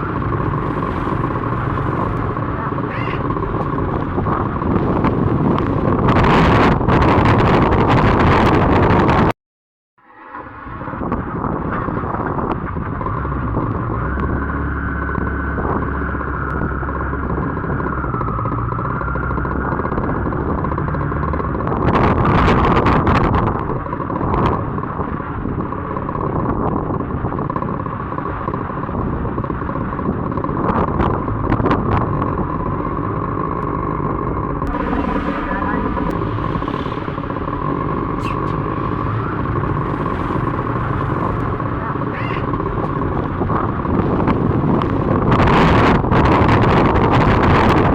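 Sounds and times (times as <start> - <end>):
wind buffeting microphone: 0.0 - 9.3, 10.4 - 47.9.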